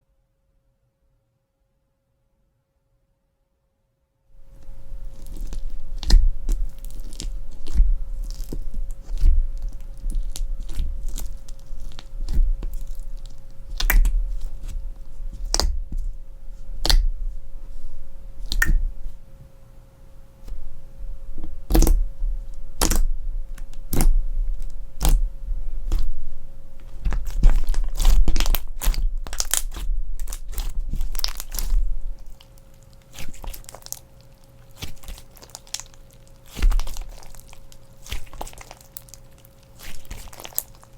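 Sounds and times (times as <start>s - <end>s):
slime crackling and popping: 4.4s - 17.3s, 18.4s - 19.0s, 21.6s - 22.1s, 22.8s - 40.9s
soft low thuds: 5.7s - 11.4s, 12.1s - 13.0s, 20.5s - 32.3s.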